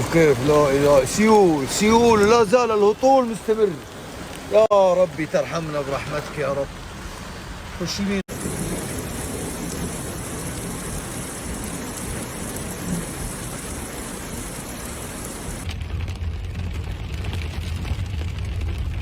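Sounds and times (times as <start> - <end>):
heavy rain falling: 0.0 - 19.0
deep rough rumble: 8.3 - 19.0.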